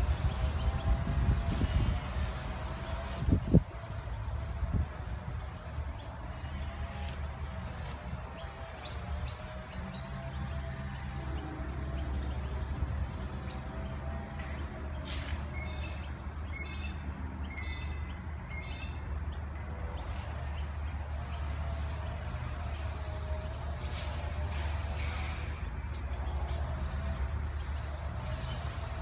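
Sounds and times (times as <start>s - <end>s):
small birds chirping: 0.0s - 19.4s.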